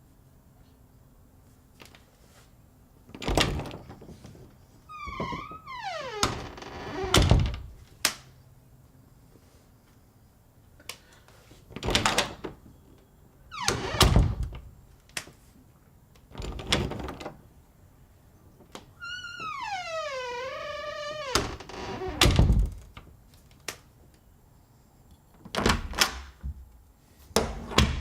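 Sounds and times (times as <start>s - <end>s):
door and latch thudding: 3.1s - 4.0s, 5.0s - 7.7s, 13.6s - 14.7s, 19.4s - 22.9s, 25.4s - 26.6s, 27.4s - 28.0s
door hinge creaking: 4.9s - 7.7s, 13.5s - 14.6s, 18.8s - 22.8s.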